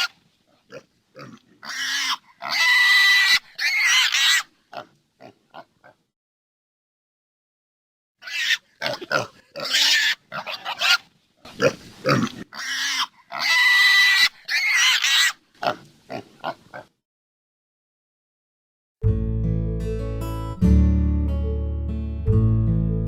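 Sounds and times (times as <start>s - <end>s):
pig squealing: 1.2s - 4.9s, 8.2s - 11.0s, 11.6s - 16.8s.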